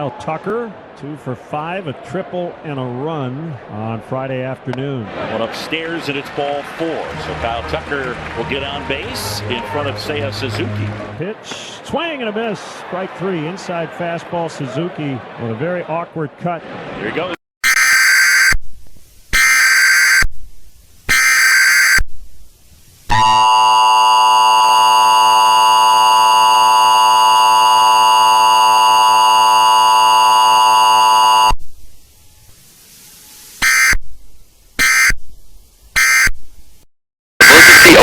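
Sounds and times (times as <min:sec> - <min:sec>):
digital data bursts: 0:17.6 - 0:18.6, 0:19.3 - 0:20.2, 0:21.1 - 0:22.0, 0:37.4 - 0:38.0
steady alarm tone: 0:17.6 - 0:18.6, 0:19.4 - 0:20.3, 0:21.1 - 0:22.0, 0:23.1 - 0:31.6, 0:33.6 - 0:34.0, 0:34.8 - 0:35.2, 0:36.0 - 0:36.3.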